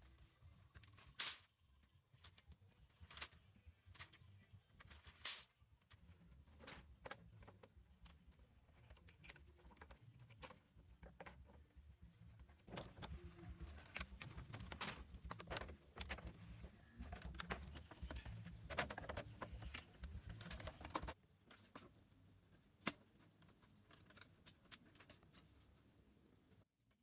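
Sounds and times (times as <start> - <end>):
faint clicks and taps: 5.8 - 25.7.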